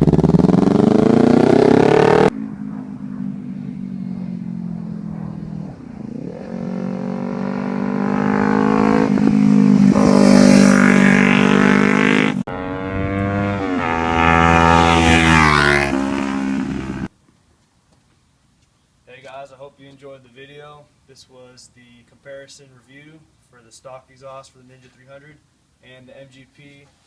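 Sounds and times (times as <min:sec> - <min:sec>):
motorcycle engine passing: 0:00.0 - 0:17.1.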